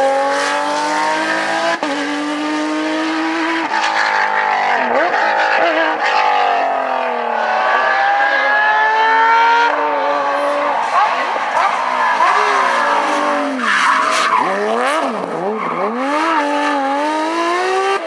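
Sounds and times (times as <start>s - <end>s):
rally car engines revving high: 0.0s - 18.0s.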